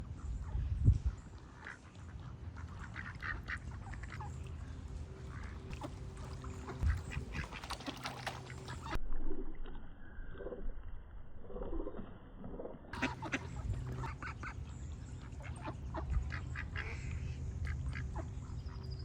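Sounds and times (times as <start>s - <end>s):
ducks quacking: 1.5s - 9.0s, 12.9s - 19.0s.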